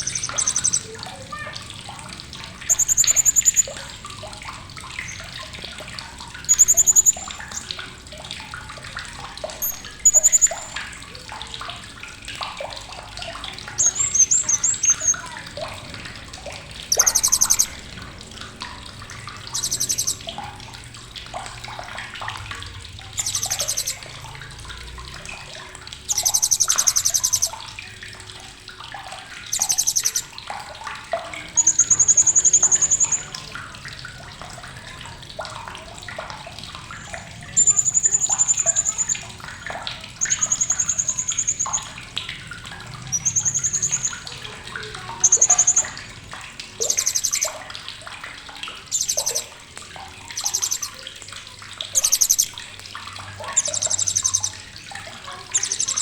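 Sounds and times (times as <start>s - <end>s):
parrot chattering trills: 0.0s - 1.6s, 2.6s - 3.9s, 6.4s - 7.7s, 9.6s - 10.8s, 13.8s - 15.3s, 16.8s - 17.8s, 19.6s - 20.2s, 23.2s - 24.0s, 26.1s - 27.5s, 29.5s - 30.3s, 31.6s - 33.3s, 37.6s - 39.3s, 43.1s - 44.2s, 45.1s - 46.0s, 46.8s - 47.5s, 48.9s - 49.5s, 50.4s - 50.9s, 52.0s - 52.5s, 53.5s - 54.6s, 55.4s - 56.0s
soft scattered chirps: 0.0s - 1.6s, 2.2s - 7.8s, 9.4s - 10.8s, 13.7s - 15.6s, 16.8s - 17.9s, 19.5s - 20.3s, 23.2s - 24.2s, 26.1s - 27.6s, 29.5s - 30.3s, 31.4s - 33.5s, 37.0s - 39.4s, 40.2s - 42.0s, 43.0s - 47.7s, 48.8s - 49.7s, 50.3s - 51.2s, 51.8s - 56.0s
faint splashing: 0.0s - 56.0s.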